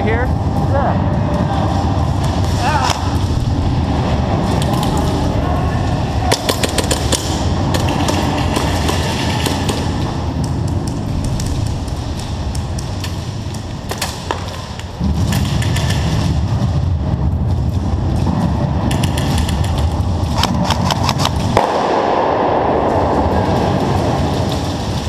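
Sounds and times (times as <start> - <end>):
low rumble on microphone: 0.0 - 25.0
airsoft guns firing: 6.2 - 16.3, 18.9 - 25.0.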